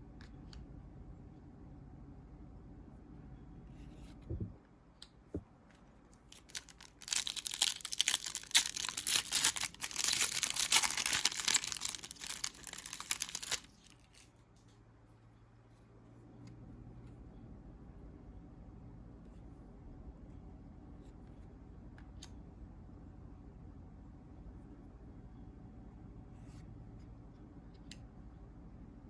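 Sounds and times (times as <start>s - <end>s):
foil wrapper tearing and crinkling: 6.2s - 14.2s.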